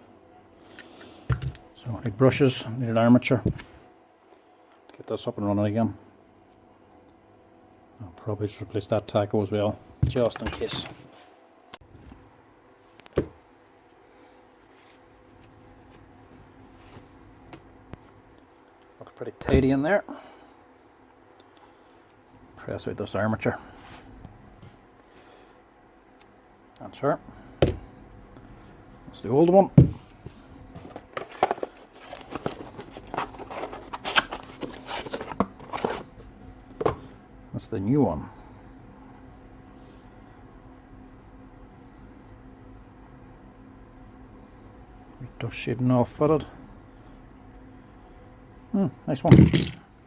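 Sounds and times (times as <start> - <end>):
rustling and scraping of parts: 13.8 - 19.6, 29.8 - 37.2
hands handling metal parts: 30.7 - 37.0.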